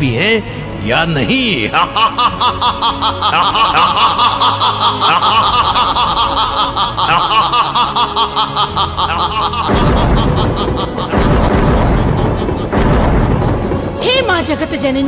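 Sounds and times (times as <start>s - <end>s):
background music: 0.0s - 15.0s
man laughing menacingly: 1.7s - 13.9s
loud low rumble: 9.2s - 14.5s.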